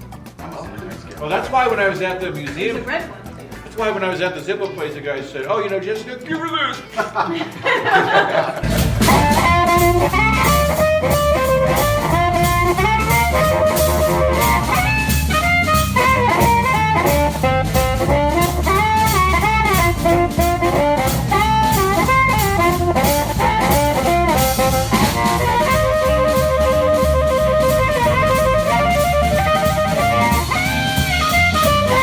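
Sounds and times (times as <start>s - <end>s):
drum kit: 0.0s - 4.7s, 5.4s - 32.0s
upbeat jazz music: 0.0s - 32.0s
saxophone melody: 8.7s - 32.0s.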